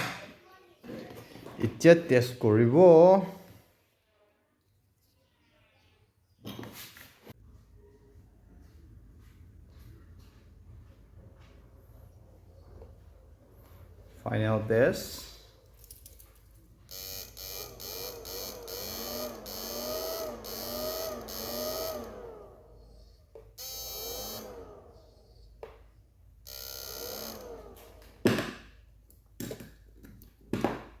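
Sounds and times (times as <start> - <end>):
wavering electrical buzz: 16.9 - 23.0, 23.6 - 25.2, 26.4 - 28.3.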